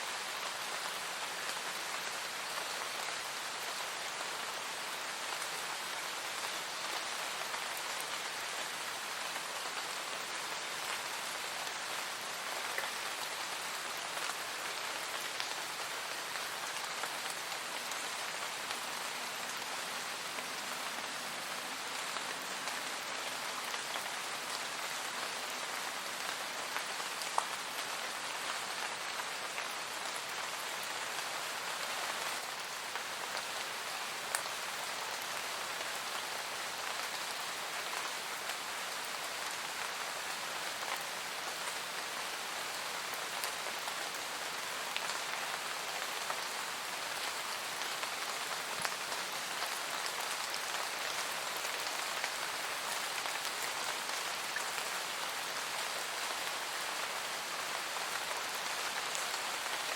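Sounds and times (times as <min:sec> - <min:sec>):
rain pattering: 0:00.1 - 0:59.9.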